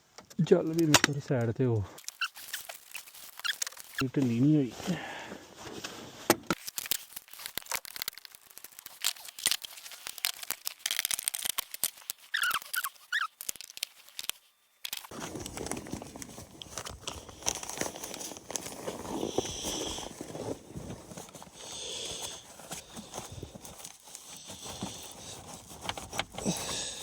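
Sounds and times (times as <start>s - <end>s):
short squeaks: 2.0s - 4.0s, 12.3s - 13.5s.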